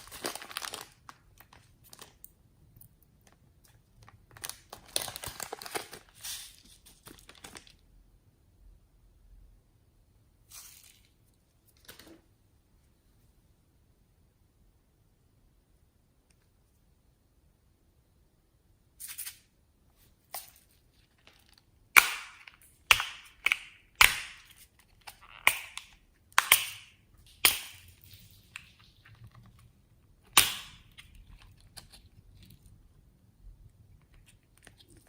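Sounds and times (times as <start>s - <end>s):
slime popping: 25.1s - 28.0s.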